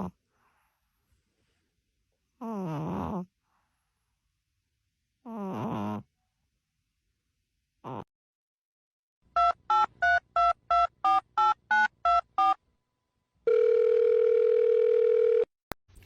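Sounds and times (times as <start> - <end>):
steady dial tone: 13.5 - 15.5
telephone keypad tones: 13.5 - 15.5.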